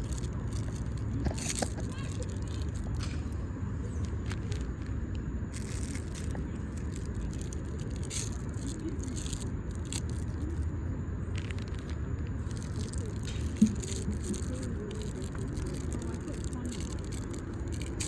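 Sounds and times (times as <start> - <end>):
plastic packaging crinkling: 0.0 - 3.4, 4.0 - 10.6, 11.4 - 18.0
low rumble: 0.0 - 18.0.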